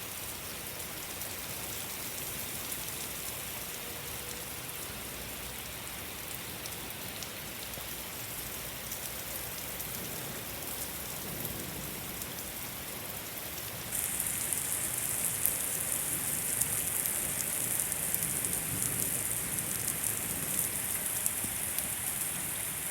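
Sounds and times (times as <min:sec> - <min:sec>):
heavy rain falling: 0:08.3 - 0:22.9.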